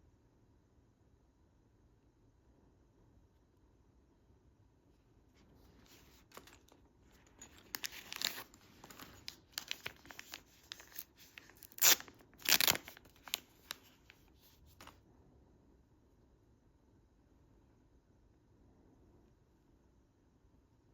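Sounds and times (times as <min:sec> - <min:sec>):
packaging torn and crinkled: 0:05.9 - 0:15.0.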